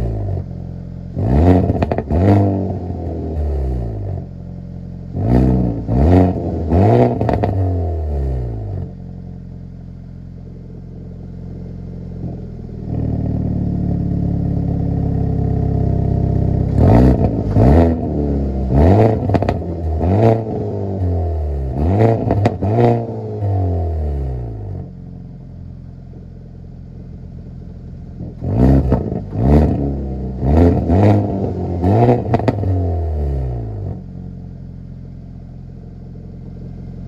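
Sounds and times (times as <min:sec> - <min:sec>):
exhaust popping and crackling: 0:00.0 - 0:03.2, 0:05.0 - 0:07.7, 0:14.2 - 0:23.2, 0:25.2 - 0:37.0
car engine revving: 0:00.0 - 0:09.1, 0:10.5 - 0:26.3, 0:26.9 - 0:37.0
car engine idling: 0:00.0 - 0:37.0.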